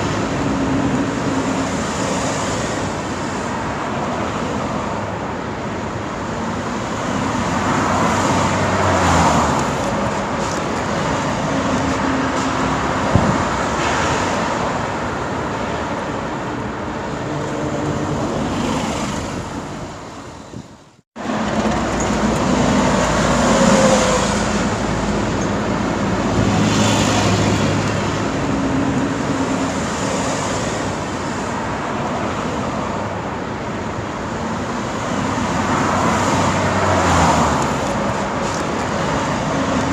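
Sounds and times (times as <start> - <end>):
road traffic passing: 0.0 - 39.9.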